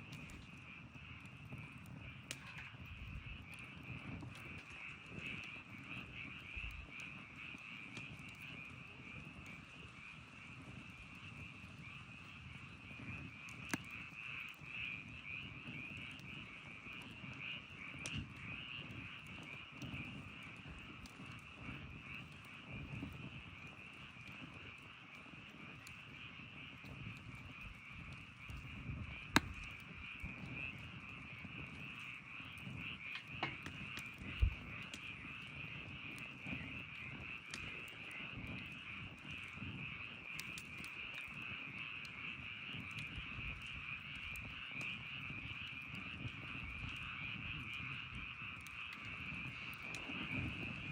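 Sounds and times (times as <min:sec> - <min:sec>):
campfire crackling and popping: 0:00.0 - 0:50.9.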